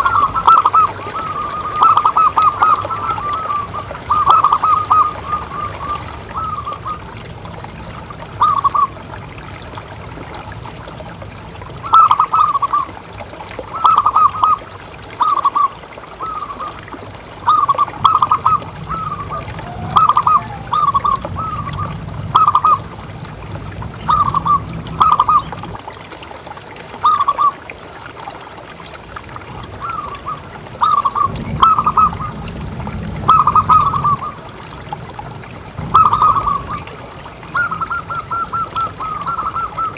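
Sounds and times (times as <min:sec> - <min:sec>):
dove cooing: 0:00.0 - 0:07.0, 0:17.5 - 0:23.0, 0:24.1 - 0:25.7, 0:33.3 - 0:34.4, 0:35.8 - 0:37.0, 0:37.6 - 0:39.9.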